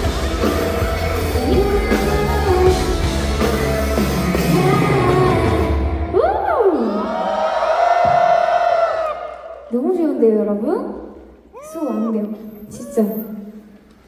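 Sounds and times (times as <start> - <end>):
live rock-pop band: 0.0 - 6.1
woman singing: 0.5 - 6.9.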